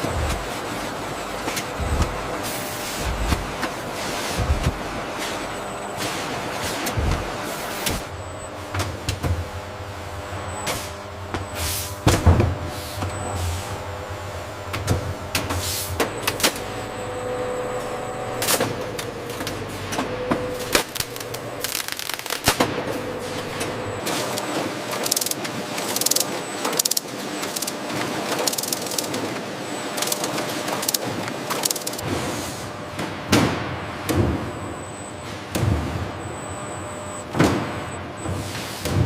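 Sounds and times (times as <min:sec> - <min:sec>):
machinery running hum: 0:00.0 - 0:39.0
metal parts clicking and knocking: 0:25.0 - 0:27.8, 0:28.4 - 0:29.2, 0:31.6 - 0:32.0.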